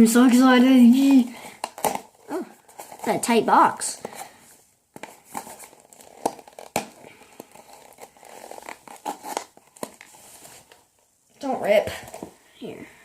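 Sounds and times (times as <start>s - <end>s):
packaging crinkling and scraping: 1.0s - 11.1s.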